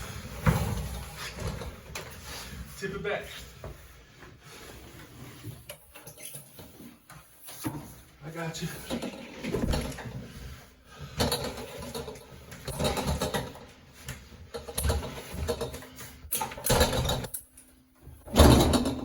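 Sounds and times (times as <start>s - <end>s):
stair-climbing dolly mechanism: 11.0s - 17.4s, 18.0s - 19.0s.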